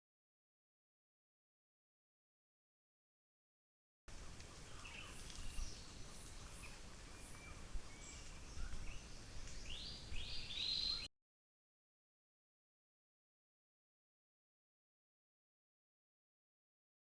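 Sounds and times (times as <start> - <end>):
bird chirps and whistles: 9.7 - 11.1.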